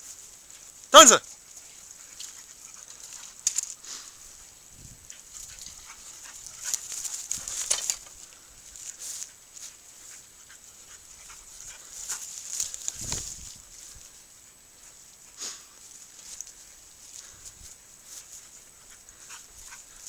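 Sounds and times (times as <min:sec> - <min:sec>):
dog scratchy rustles and clicks: 0:00.0 - 0:14.2.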